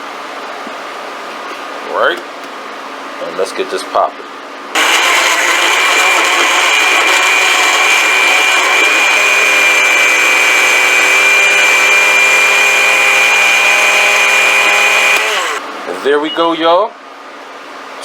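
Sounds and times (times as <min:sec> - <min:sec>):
blender whining: 0:04.8 - 0:15.7.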